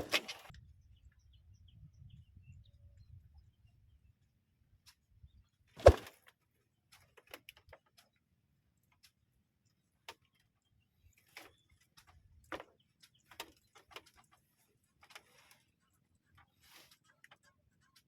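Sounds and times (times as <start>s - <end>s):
sharp knock with deep thud: 5.8s - 6.0s
faint clicks and ticks: 6.9s - 10.5s, 11.2s - 18.0s.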